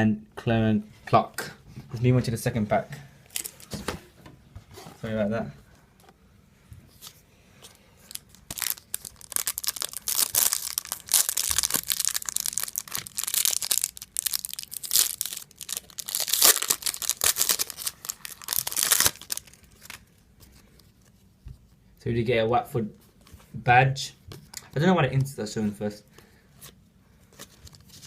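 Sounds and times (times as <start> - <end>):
wrapper tearing and crinkling: 3.4 - 3.7, 8.1 - 20.1.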